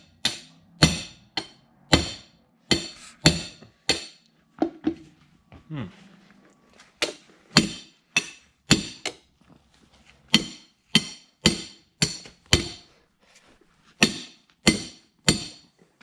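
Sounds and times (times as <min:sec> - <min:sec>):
hammer striking metal: 0:00.0 - 0:05.1, 0:07.0 - 0:09.2, 0:10.3 - 0:12.9, 0:14.0 - 0:15.7.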